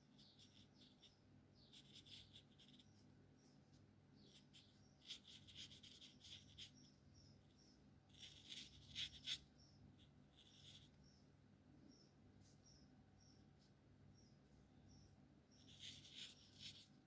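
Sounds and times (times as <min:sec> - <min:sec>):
marker scratching on paper: 0:00.0 - 0:03.0, 0:04.2 - 0:06.9, 0:08.1 - 0:11.0, 0:15.6 - 0:17.0
faint high chirps: 0:00.0 - 0:17.0.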